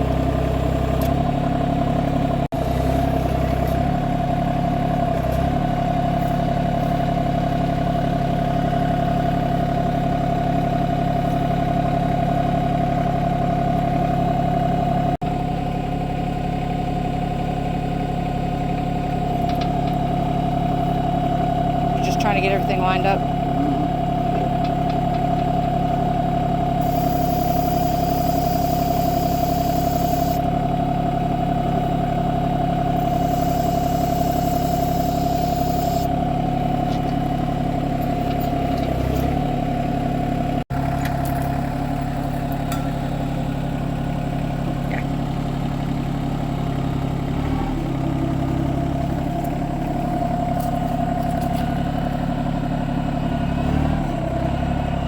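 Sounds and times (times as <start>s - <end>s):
diesel tractor engine running: 0.0s - 55.0s
hydraulic whine: 26.6s - 39.8s
high hiss: 26.8s - 30.4s, 33.0s - 36.1s.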